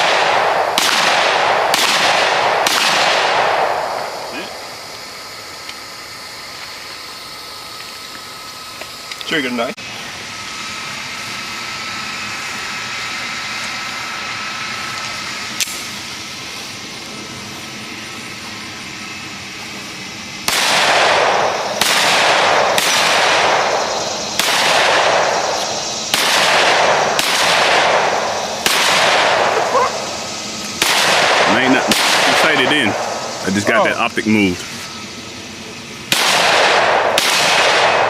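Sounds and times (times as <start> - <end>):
gunshots: 0.0 - 4.8, 20.4 - 30.0, 30.8 - 33.7, 36.1 - 38.0
outdoor noise: 0.0 - 38.0.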